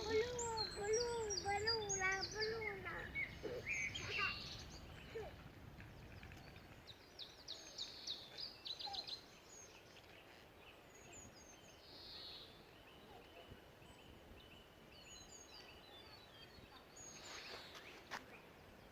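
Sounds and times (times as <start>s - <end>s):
small songbird singing: 0.0s - 5.4s.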